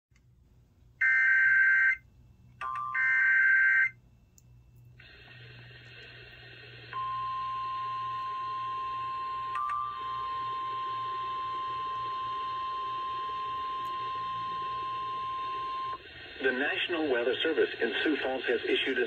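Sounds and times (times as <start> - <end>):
radio hiss: 5.0 - 7.0, 15.7 - 19.0
steady alarm tone: 6.9 - 16.0.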